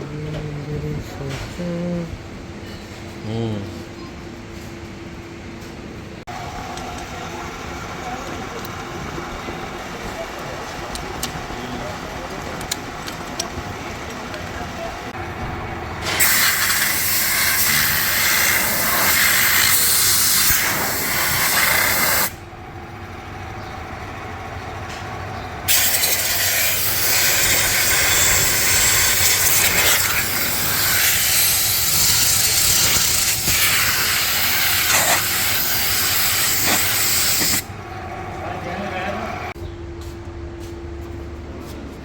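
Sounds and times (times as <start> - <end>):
loud hissing air jet: 16.0 - 22.4, 25.7 - 37.7.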